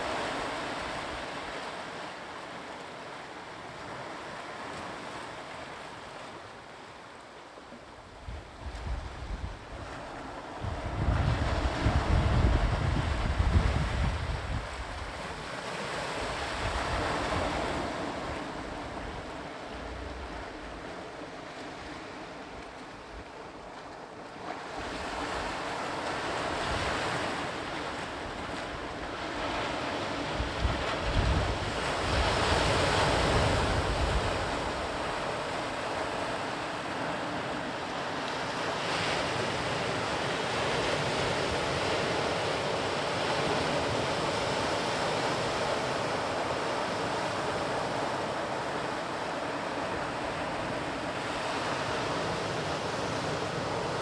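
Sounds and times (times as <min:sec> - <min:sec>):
sea waves breaking: 0:00.0 - 0:54.0
wind buffeting microphone: 0:08.2 - 0:15.4, 0:28.2 - 0:36.3.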